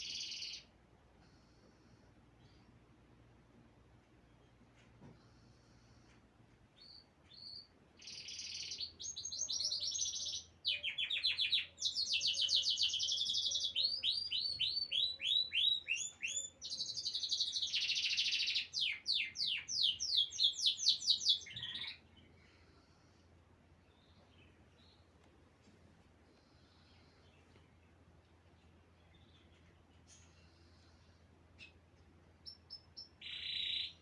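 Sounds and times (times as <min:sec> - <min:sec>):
songbird singing trills: 0:00.0 - 0:00.7, 0:06.8 - 0:22.9, 0:26.3 - 0:34.0.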